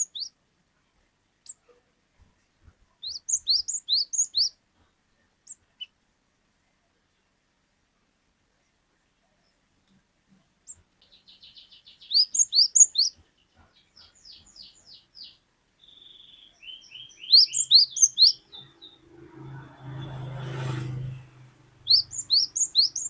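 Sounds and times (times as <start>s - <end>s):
bird singing whistled phrases: 3.0s - 4.5s, 11.3s - 13.2s, 14.3s - 19.0s, 21.9s - 23.0s.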